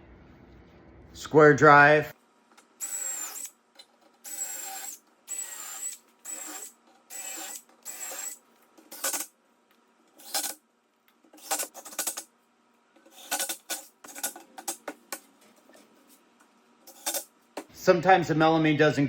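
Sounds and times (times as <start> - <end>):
power driver driving screws: 2.8 - 3.6, 4.2 - 9.3, 10.2 - 10.6
screws and parts clattering: 11.3 - 12.3, 13.0 - 15.2, 16.9 - 17.3.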